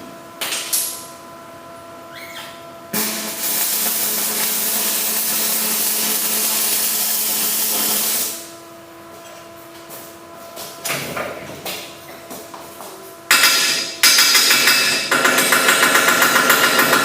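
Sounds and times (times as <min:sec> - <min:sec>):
arc welding hiss: 0:03.0 - 0:08.5.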